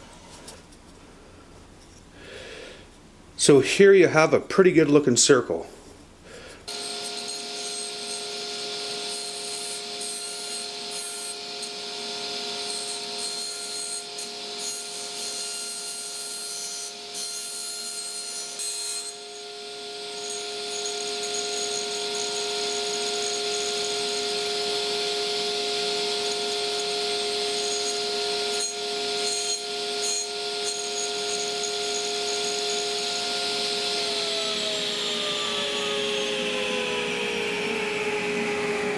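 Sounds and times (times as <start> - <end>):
table saw running: 6.7 - 38.9
wood rasping against saw blade: 12.6 - 34.1.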